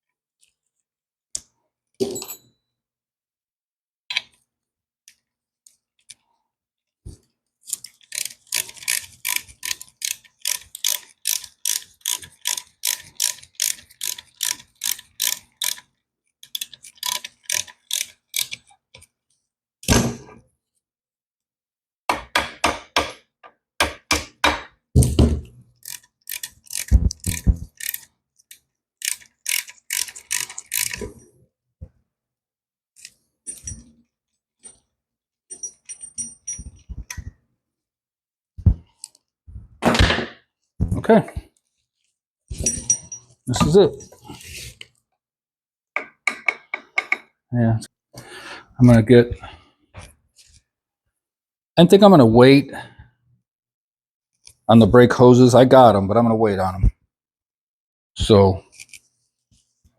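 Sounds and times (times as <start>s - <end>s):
ratchet wrench clicking: 8.1s - 15.8s, 16.5s - 18.6s, 25.8s - 28.0s, 29.0s - 31.0s.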